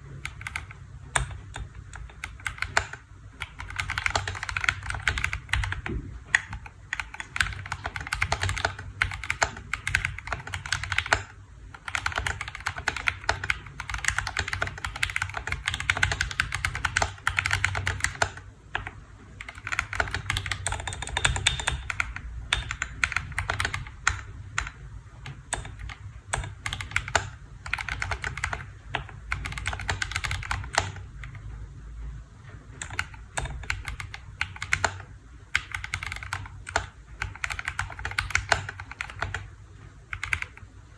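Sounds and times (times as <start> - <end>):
mechanical keyboard typing: 0.0 - 31.8, 32.4 - 40.9.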